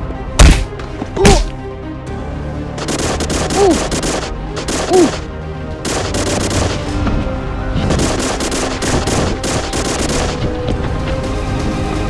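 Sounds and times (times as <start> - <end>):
background music: 0.0 - 12.0
rapid machine gun fire: 8.0 - 10.4.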